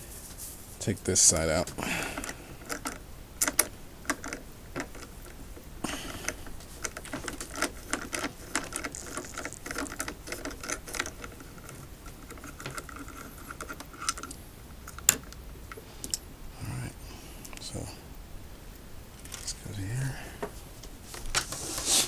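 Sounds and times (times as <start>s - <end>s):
clicks and taps of parts: 2.2s - 5.4s, 6.1s - 16.2s.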